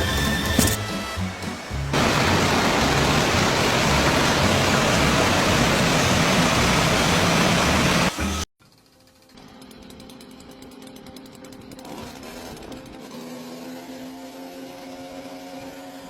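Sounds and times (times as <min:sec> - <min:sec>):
loud rushing hiss: 0:01.2 - 0:08.4.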